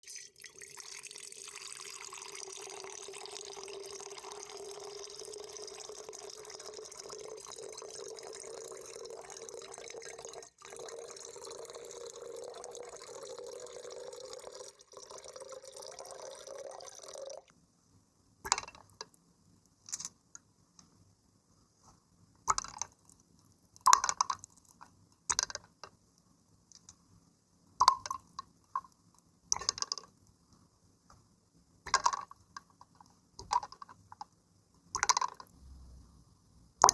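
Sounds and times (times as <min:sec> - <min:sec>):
water drips and small splashes: 0:00.0 - 0:17.5
water pouring: 0:00.0 - 0:17.5.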